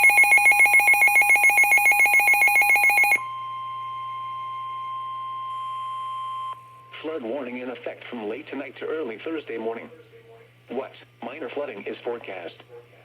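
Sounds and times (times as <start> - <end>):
pulsing two-tone warble alert: 0.0 - 6.6
steady warning alarm tone: 0.0 - 7.8.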